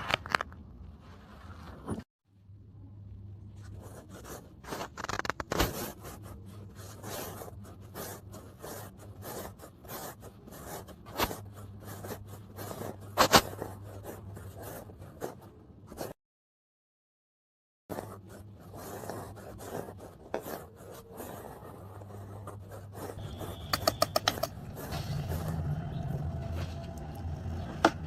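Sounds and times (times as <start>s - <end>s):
blade cutting kinetic sand: 23.1s - 28.0s.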